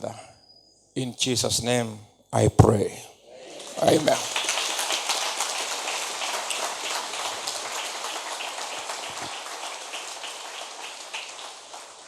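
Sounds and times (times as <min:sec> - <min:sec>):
congregation clapping: 0:03.5 - 0:12.0.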